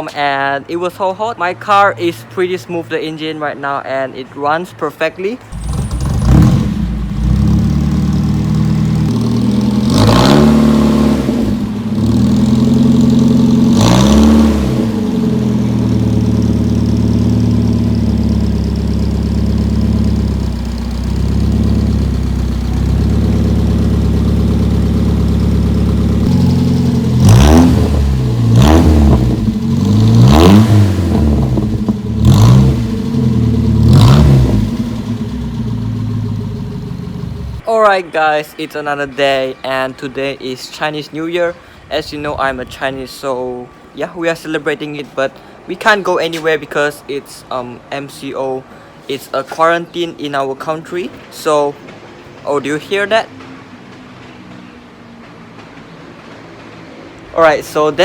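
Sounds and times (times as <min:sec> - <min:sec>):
car engine idling: 0:05.5 - 0:37.6
car engine revving: 0:05.5 - 0:37.6.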